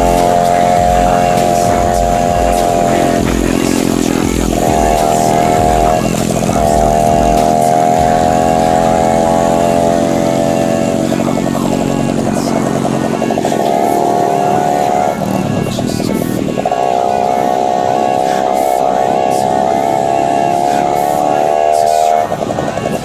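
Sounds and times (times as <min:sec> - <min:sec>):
motorcycle engine revving hard: 0:00.0 - 0:23.0.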